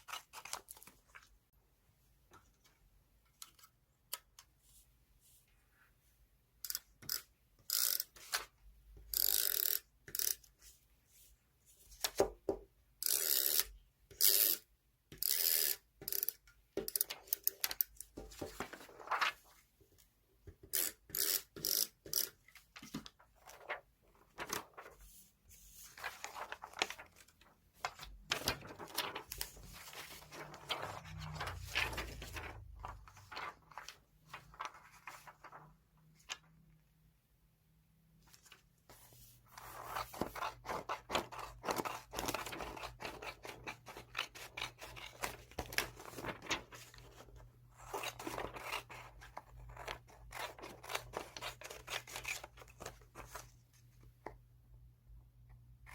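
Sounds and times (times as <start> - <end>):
paper crinkling and rustling: 18.2 - 19.9, 22.4 - 36.5, 38.3 - 54.0.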